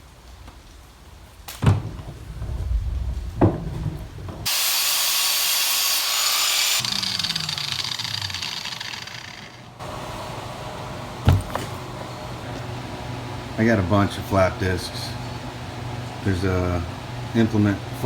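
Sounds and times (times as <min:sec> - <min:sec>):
angle grinder running: 0:04.5 - 0:13.5.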